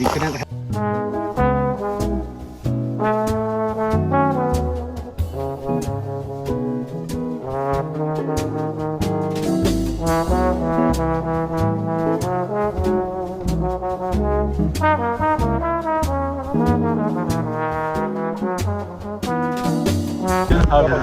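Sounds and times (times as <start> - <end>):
brass lead melody: 0.0 - 21.0
steady drum beat: 18.7 - 21.0
bass line: 20.2 - 21.0.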